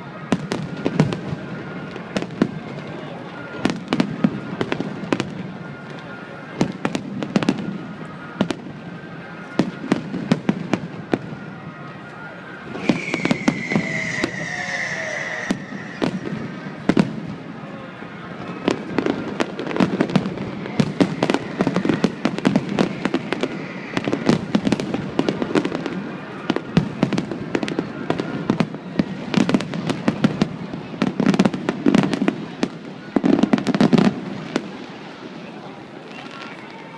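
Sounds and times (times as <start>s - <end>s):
firework cracks and crackles: 0.3s - 11.4s, 12.1s - 17.7s, 18.4s - 35.4s
falling firework whistle: 12.6s - 17.4s, 19.8s - 28.6s.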